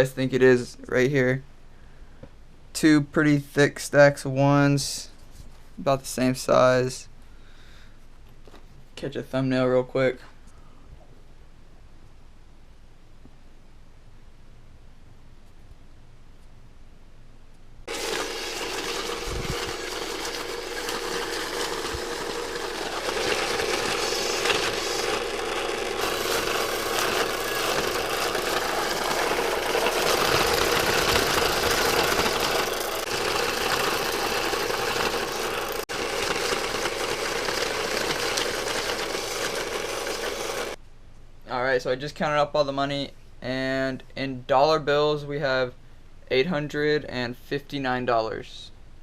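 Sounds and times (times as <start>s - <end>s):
banknote counter running: 17.9s - 40.8s.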